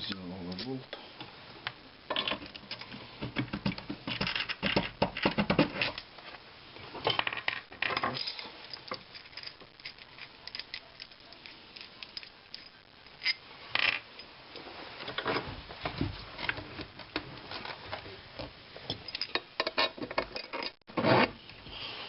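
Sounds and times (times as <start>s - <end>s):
metal nuts and washers clinking: 7.0s - 14.3s, 18.9s - 20.8s.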